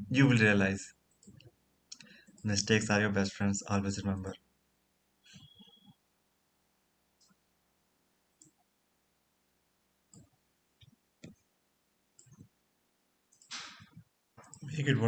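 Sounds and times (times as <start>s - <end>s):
computer mouse clicks: 1.1s - 2.5s, 8.4s - 8.6s, 10.1s - 11.4s, 12.2s - 12.6s, 13.3s - 14.7s.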